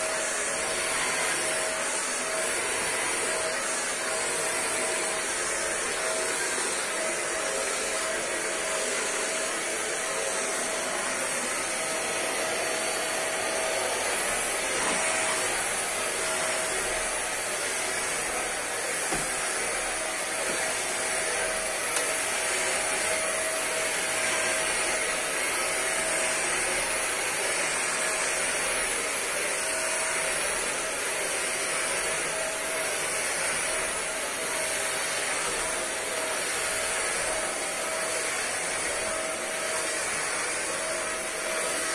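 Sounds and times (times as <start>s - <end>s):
vacuum cleaner running: 0.0s - 41.9s.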